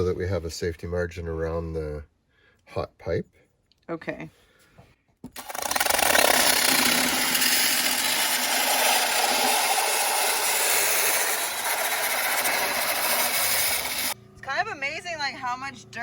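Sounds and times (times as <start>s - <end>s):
power tool cutting: 5.3s - 14.2s.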